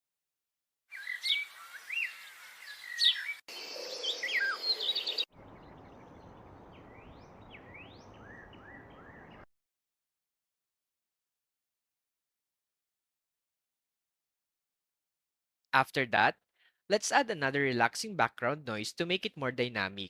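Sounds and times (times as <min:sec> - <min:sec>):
birds chirping and singing: 0:00.9 - 0:09.5.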